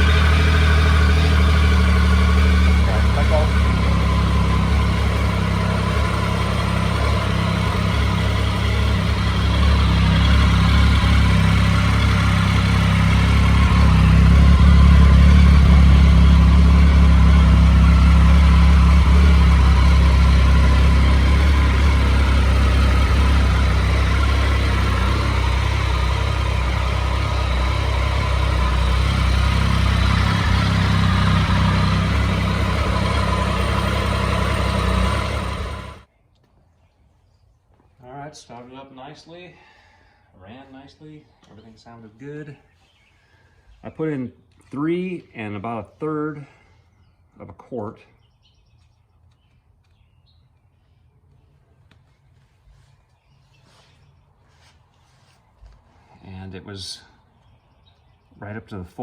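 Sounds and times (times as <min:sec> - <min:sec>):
motorcycle engine idling: 0:00.0 - 0:36.1.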